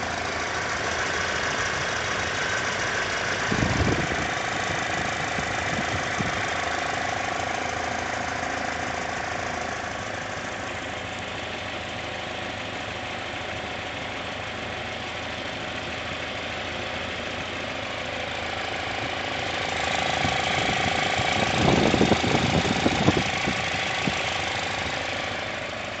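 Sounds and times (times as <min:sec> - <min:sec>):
engine knocking: 0:00.0 - 0:26.0
engine running: 0:00.0 - 0:26.0.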